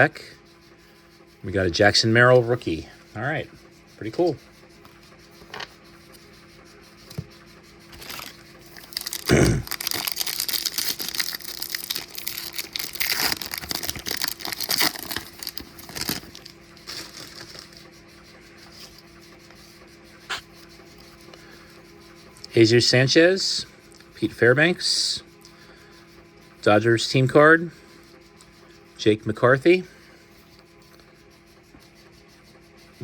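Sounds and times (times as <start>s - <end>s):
wrapper tearing and crinkling: 8.0s - 17.6s.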